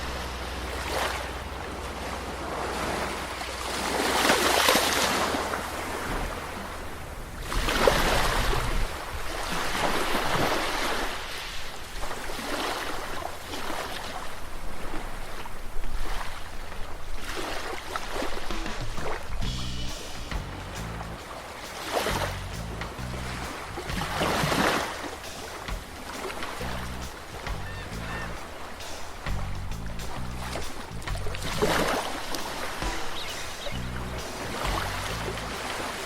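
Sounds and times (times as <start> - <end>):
sea waves washing ashore: 0.0 - 36.0
wind rumble on microphone: 5.5 - 10.9, 22.1 - 24.9, 29.2 - 36.0.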